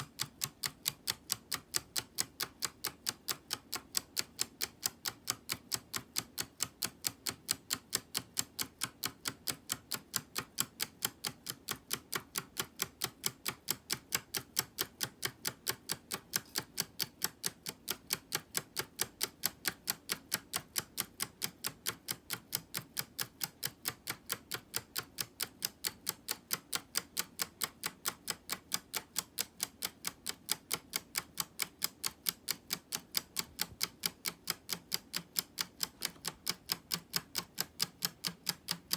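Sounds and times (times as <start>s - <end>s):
plastic escapement ticking: 0.0s - 38.9s.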